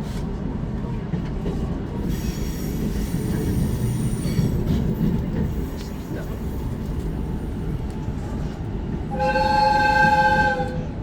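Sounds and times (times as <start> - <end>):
low train running rumble: 0.0 - 11.0
train wheels squealing: 2.0 - 5.8.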